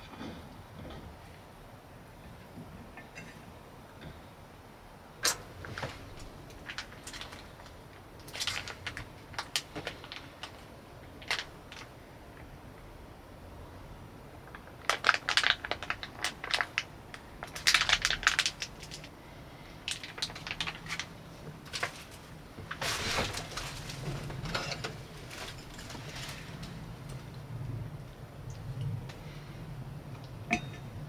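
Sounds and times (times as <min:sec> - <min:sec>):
crackling crinkling handling noise: 0:05.2 - 0:12.5, 0:14.4 - 0:29.4.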